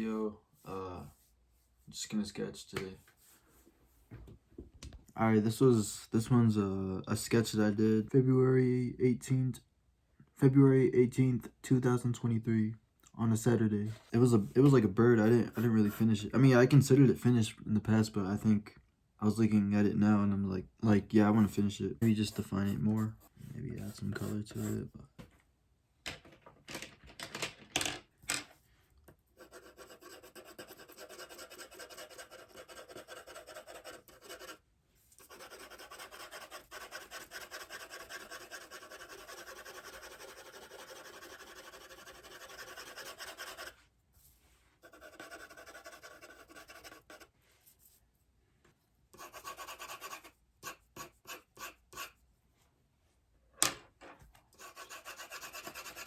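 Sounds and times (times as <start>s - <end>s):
pencil scratching on paper: 14.4s - 16.1s, 21.2s - 24.8s, 29.4s - 34.6s, 35.2s - 43.8s, 44.8s - 47.3s, 49.2s - 52.2s, 54.6s - 56.0s.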